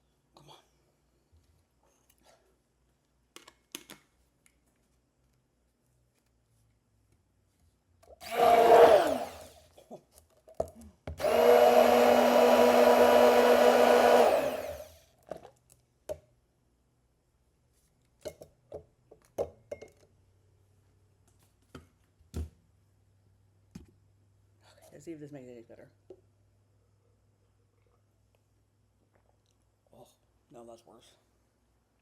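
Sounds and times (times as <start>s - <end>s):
immersion blender blending: 8.2s - 9.6s, 11.2s - 15.0s.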